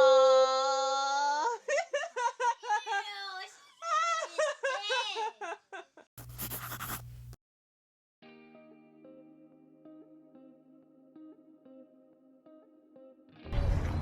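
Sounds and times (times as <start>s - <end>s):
child's long high aaah: 0.0s - 1.6s.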